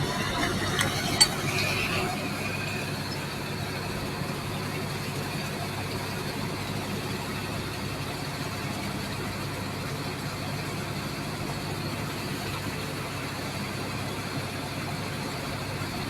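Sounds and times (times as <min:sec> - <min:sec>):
engine humming: 0:00.0 - 0:04.8.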